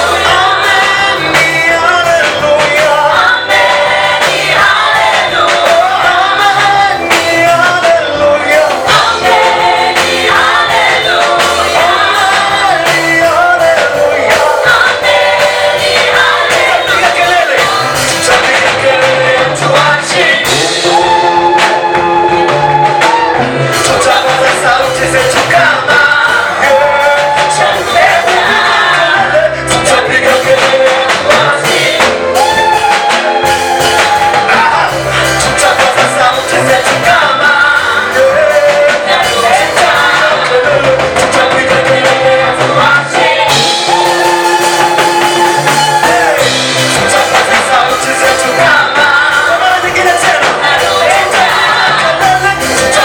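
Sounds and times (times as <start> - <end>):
band playing: 0.0 - 53.0
vocal group singing praise song: 0.0 - 53.0.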